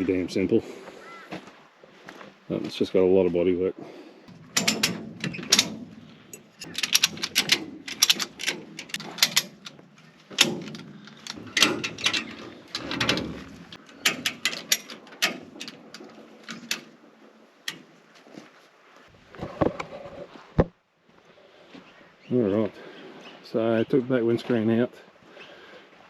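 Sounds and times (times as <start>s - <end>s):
car parts clattering and knocking: 4.3s - 17.0s.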